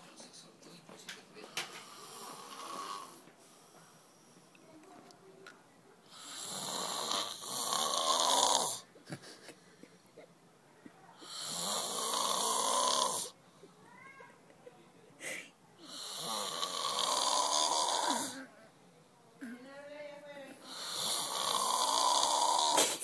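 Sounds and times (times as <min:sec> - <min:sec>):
person snoring: 0:01.8 - 0:03.3, 0:06.1 - 0:08.8, 0:11.2 - 0:13.4, 0:15.8 - 0:18.5, 0:20.6 - 0:23.0.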